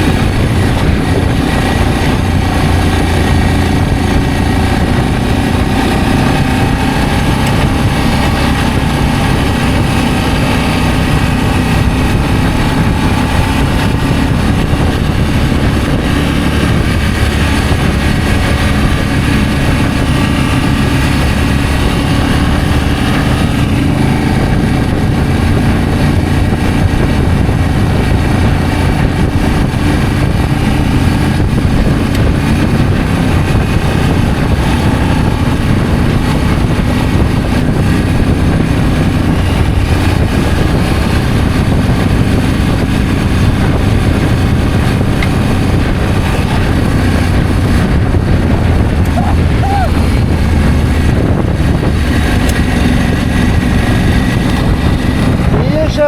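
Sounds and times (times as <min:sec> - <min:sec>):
motorcycle engine running: 0:00.0 - 0:56.0
rushing noise: 0:00.0 - 0:56.0.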